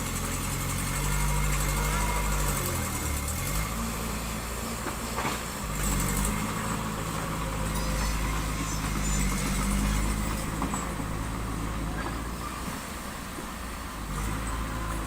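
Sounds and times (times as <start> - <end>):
heavy diesel machinery running: 0.0 - 15.0.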